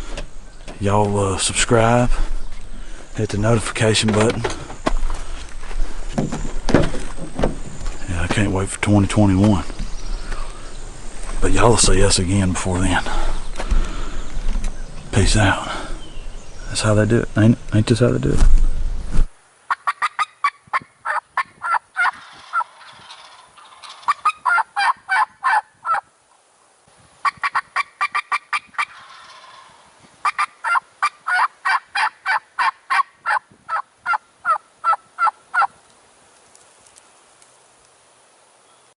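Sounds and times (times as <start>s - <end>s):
turkey yelping: 19.7s - 26.0s, 27.2s - 35.8s.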